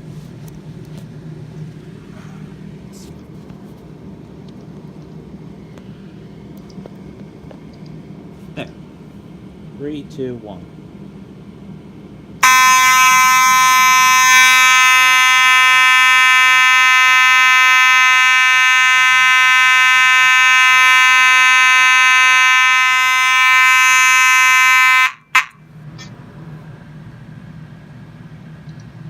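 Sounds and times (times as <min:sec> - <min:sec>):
fire alarm horn buzzing: 0:12.4 - 0:25.6.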